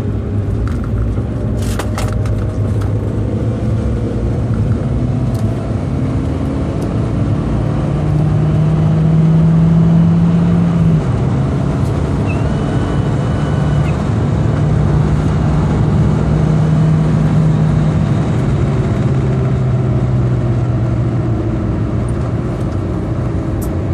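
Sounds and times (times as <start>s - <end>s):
car engine running: 0.0s - 23.9s.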